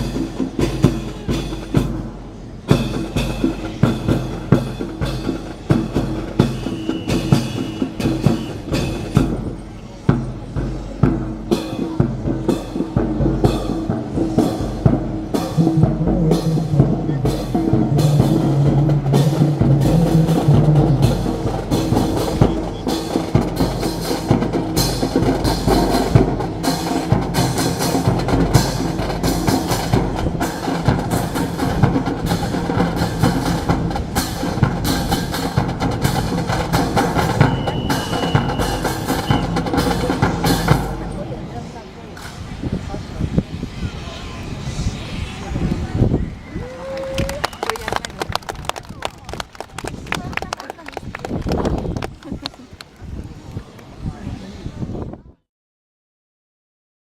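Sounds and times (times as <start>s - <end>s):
drum music with driving beat: 0.0s - 41.1s.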